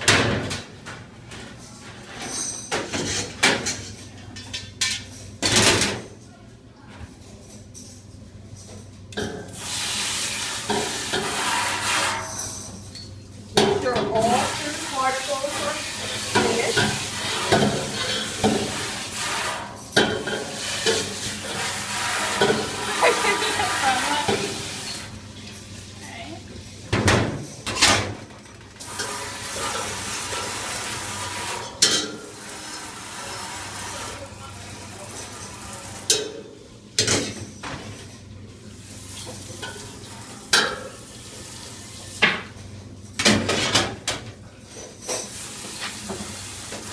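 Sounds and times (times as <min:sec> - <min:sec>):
water spraying: 0:09.6 - 0:12.2, 0:14.2 - 0:19.7, 0:20.5 - 0:24.9.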